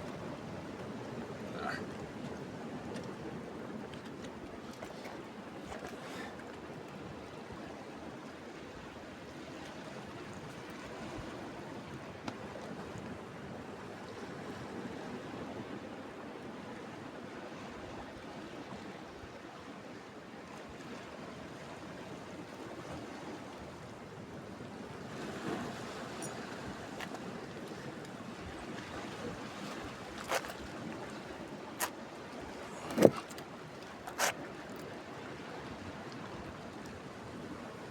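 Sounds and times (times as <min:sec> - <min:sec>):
wind: 0:00.0 - 0:37.9
waves washing against rocks: 0:28.7 - 0:34.6.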